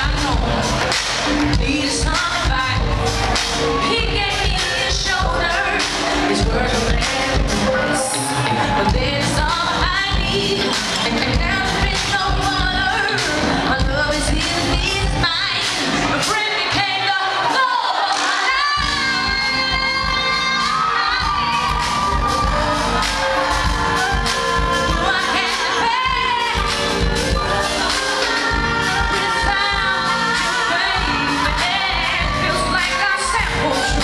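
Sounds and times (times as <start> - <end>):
live band playing: 0.0 - 34.0
woman singing: 0.0 - 34.0.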